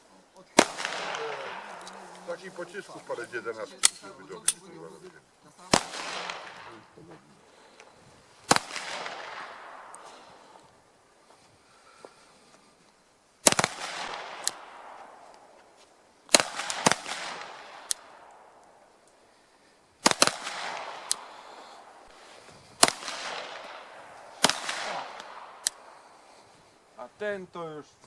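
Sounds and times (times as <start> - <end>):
pistol shots with echo: 0.6 - 2.8, 5.7 - 7.0, 8.5 - 10.5, 13.4 - 15.5, 16.3 - 18.6, 20.0 - 22.0, 22.8 - 26.0
fainter sharp cracks: 0.6 - 4.7, 5.6 - 10.8, 13.4 - 19.2, 20.0 - 26.6.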